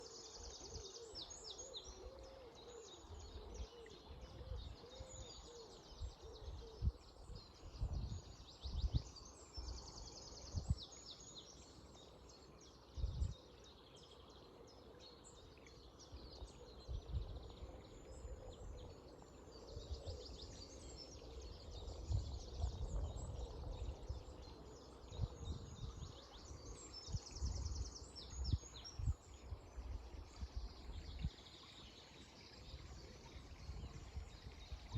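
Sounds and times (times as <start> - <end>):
songbirds chirping and trilling: 0.0 - 34.9
wind buffeting microphone: 6.8 - 9.1, 21.5 - 24.4, 25.0 - 26.2, 33.4 - 34.9
flowing river water: 24.0 - 34.9.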